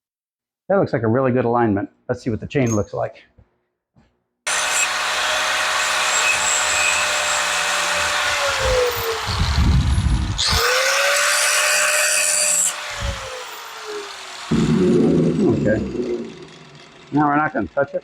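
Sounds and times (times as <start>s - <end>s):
power tool whining: 4.5s - 17.8s.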